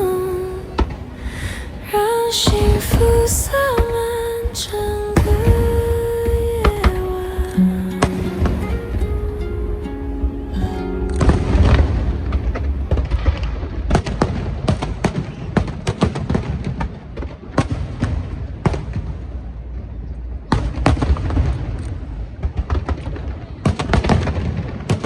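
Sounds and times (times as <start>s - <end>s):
music: 0.0s - 13.6s
deep rumble: 2.4s - 14.9s
fireworks bangs and crackles: 11.2s - 19.3s, 20.5s - 25.0s.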